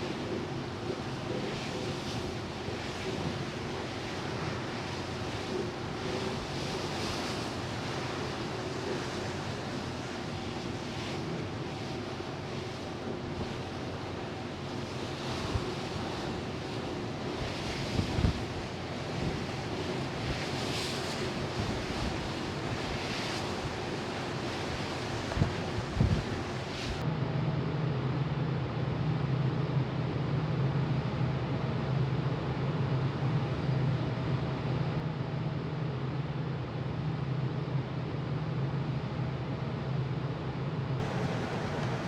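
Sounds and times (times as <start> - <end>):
faint ship hum: 0.0 - 27.0, 30.2 - 42.0
wind: 0.0 - 42.0
rushing sea water: 15.0 - 27.0, 41.0 - 42.0
wind gusts on microphone: 15.2 - 27.0.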